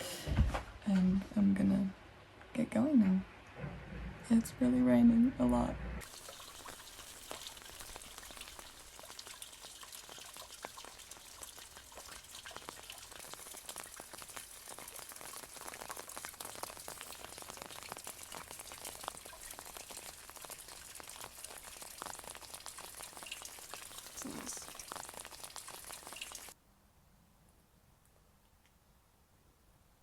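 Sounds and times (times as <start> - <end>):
heavy rain falling: 13.1 - 26.6.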